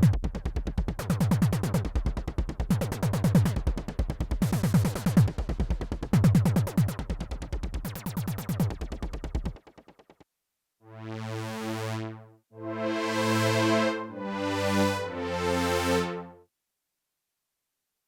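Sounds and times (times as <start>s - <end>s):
fast sequenced synthesizer patch: 10.9s - 16.3s
synthesizer pad chords: 10.9s - 16.4s.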